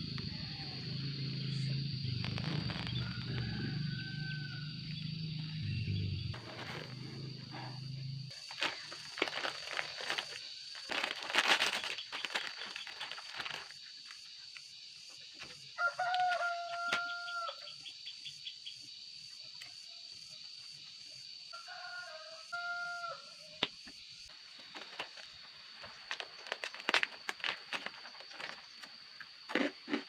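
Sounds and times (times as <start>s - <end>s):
rooster crowing: 2.8s - 5.5s, 15.8s - 17.8s, 21.5s - 23.4s.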